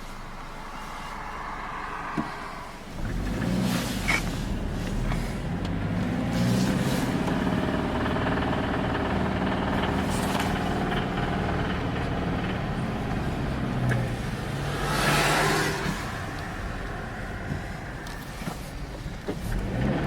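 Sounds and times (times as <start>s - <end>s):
car engine running: 0.0s - 20.0s
engine knocking noise: 6.6s - 20.0s.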